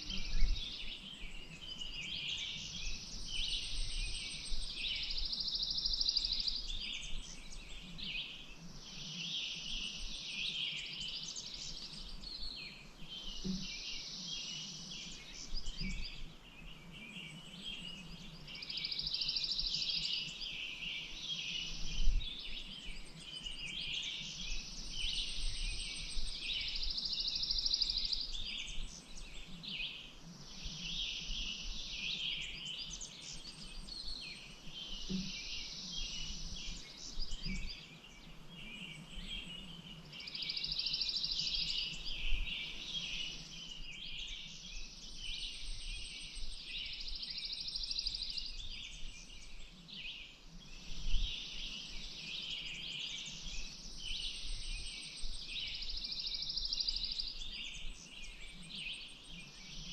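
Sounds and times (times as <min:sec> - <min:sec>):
songbirds chirping: 0:00.0 - 0:59.9.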